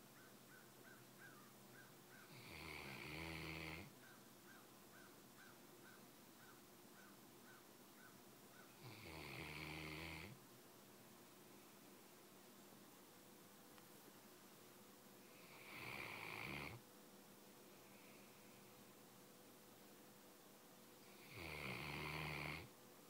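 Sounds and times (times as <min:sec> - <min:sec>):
dog snoring: 0:02.3 - 0:03.9, 0:08.8 - 0:10.4, 0:15.3 - 0:16.8, 0:21.0 - 0:22.7.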